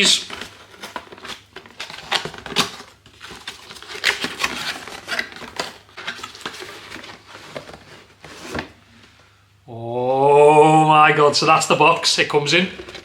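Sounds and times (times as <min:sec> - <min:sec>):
cardboard box rustling: 0:00.3 - 0:08.8.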